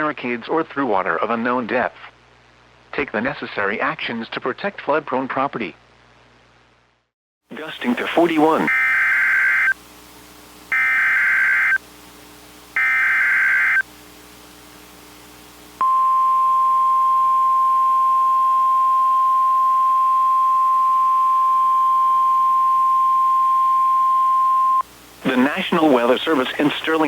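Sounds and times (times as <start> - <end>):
steady warning alarm tone: 7.8 - 9.8, 10.7 - 11.8, 12.8 - 13.8, 15.8 - 27.0.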